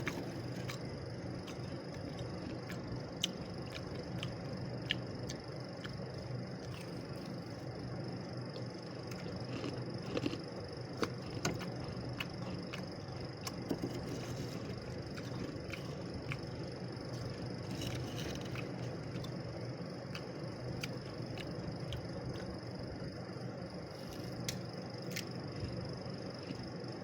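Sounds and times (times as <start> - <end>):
steady low hum: 0.0 - 27.0
freezer frost crunching and crackling: 8.4 - 19.5.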